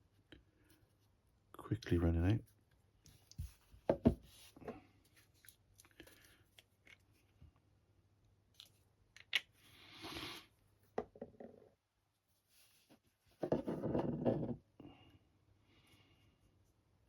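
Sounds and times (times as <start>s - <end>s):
objects clicking and tapping on desk: 13.4s - 14.6s.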